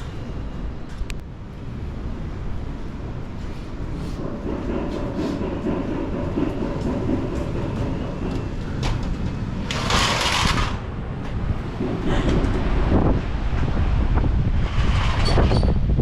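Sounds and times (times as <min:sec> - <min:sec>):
seaside wind: 0:00.0 - 0:16.0.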